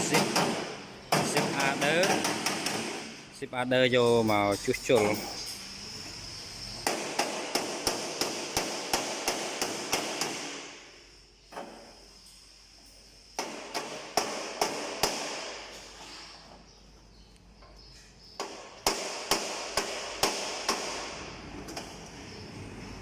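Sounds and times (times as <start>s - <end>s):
hammer striking sheet metal: 0.0s - 3.2s, 6.8s - 10.7s.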